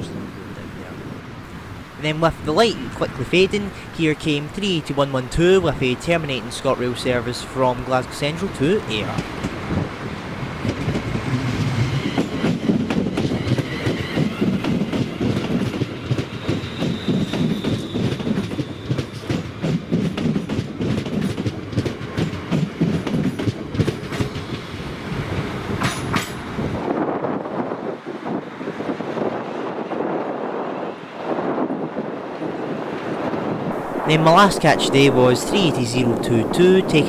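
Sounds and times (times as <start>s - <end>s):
train rumbling past: 0.0s - 26.8s, 33.7s - 37.0s.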